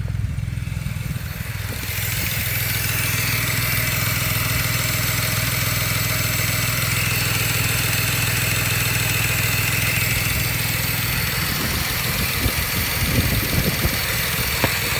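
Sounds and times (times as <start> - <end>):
car engine idling unevenly: 0.0 - 14.9
sharp engine thumps: 0.7 - 4.0, 10.0 - 14.9.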